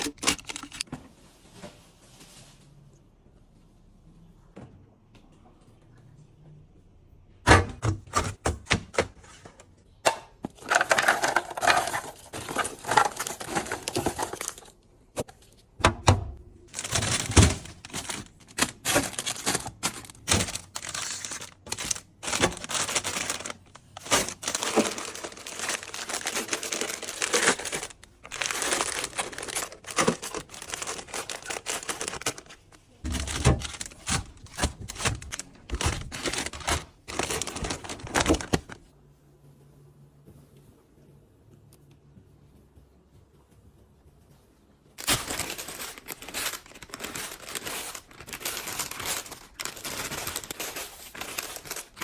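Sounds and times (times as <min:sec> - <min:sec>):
plastic packaging crinkling and tearing: 0:00.0 - 0:00.9, 0:10.6 - 0:14.8, 0:16.7 - 0:38.9, 0:45.0 - 0:52.0
items being set down: 0:10.0 - 0:14.6.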